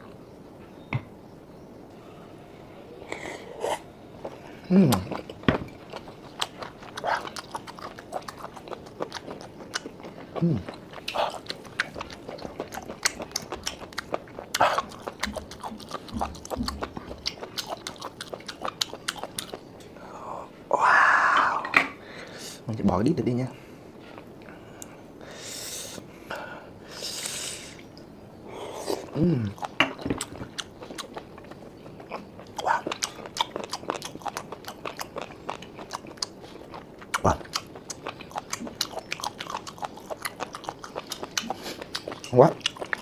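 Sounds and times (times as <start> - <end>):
chewing and wet mouth sounds: 3.1 - 20.0, 27.2 - 43.0.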